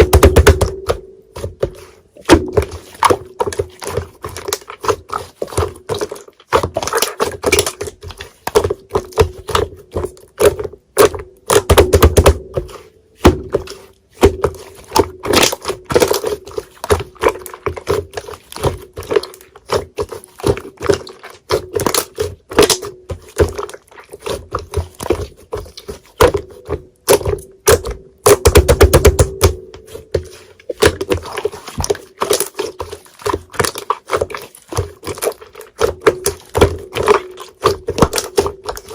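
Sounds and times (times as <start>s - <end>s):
slime squelching squeezes: 12.5s - 28.0s, 29.6s - 38.9s.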